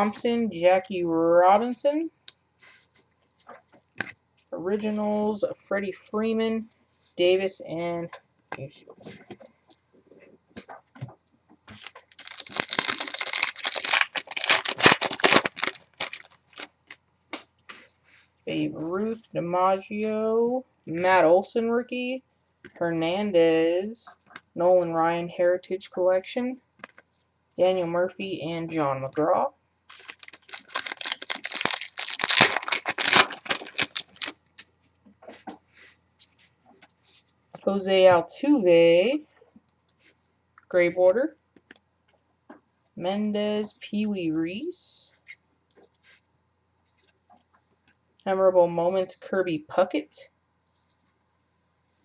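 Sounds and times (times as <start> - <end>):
plastic wrapper crinkling: 11.6 - 17.0, 29.9 - 34.7.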